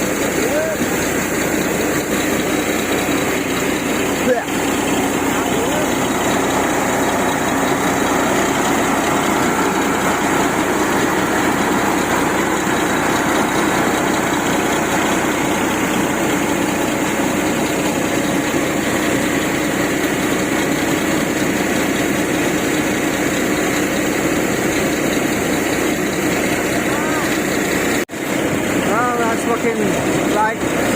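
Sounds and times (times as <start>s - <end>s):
engine droning steadily: 0.0s - 30.9s.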